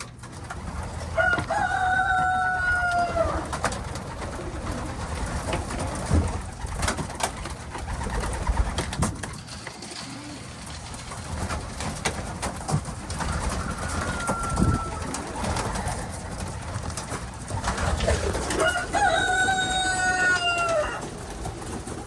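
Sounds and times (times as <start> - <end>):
pigeons cooing: 0.0 - 22.0.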